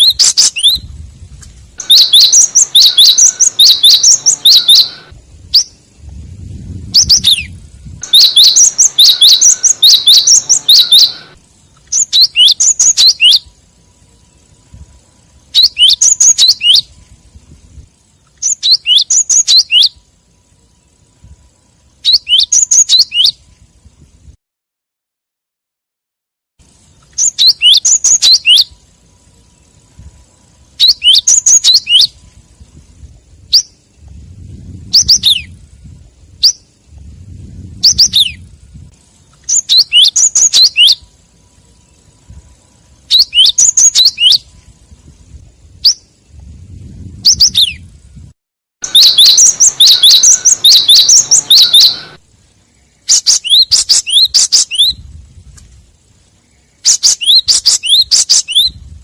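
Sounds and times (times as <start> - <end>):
faint low rumble: 0.0 - 12.2, 28.6 - 39.8, 44.4 - 53.1
bird chirps: 0.0 - 23.6, 26.6 - 47.9, 48.8 - 55.0, 56.2 - 59.0.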